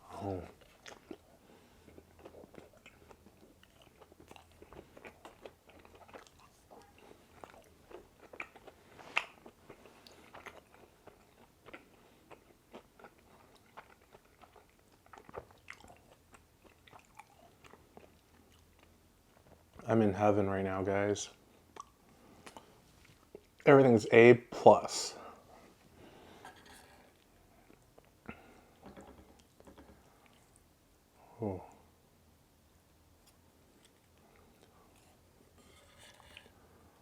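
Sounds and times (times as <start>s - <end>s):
close-miked chewing: 0.0s - 19.8s, 21.5s - 23.7s, 29.4s - 30.7s.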